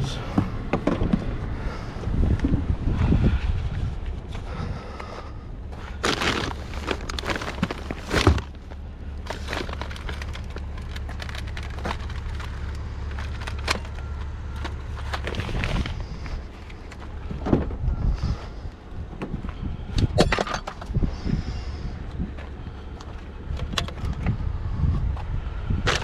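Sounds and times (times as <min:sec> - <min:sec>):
car engine idling: 0:04.2 - 0:17.8.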